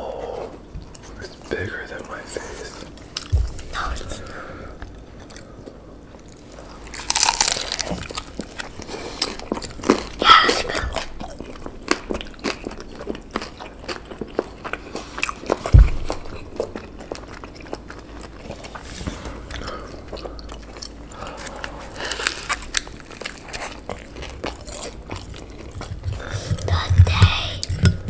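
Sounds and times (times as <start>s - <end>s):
crunchy chewing of dumplings: 0.0s - 28.0s
loud low thump: 15.7s - 16.4s.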